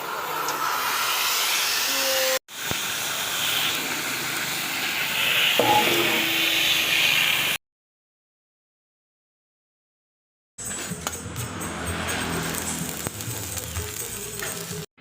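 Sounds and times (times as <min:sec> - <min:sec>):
loud hissing from metalworking: 0:00.0 - 0:07.6, 0:12.0 - 0:14.9.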